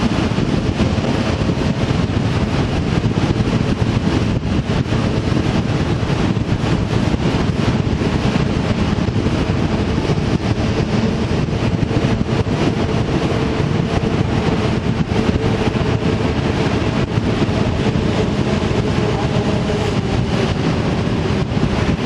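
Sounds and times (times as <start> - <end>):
low vehicle running hum: 0.0 - 22.0
wind buffeting microphone: 0.0 - 22.0.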